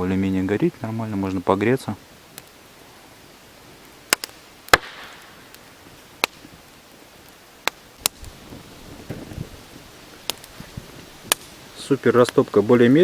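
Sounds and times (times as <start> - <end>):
soft steady fire hiss: 0.0 - 13.0
campfire pops and cracks: 0.6 - 13.0.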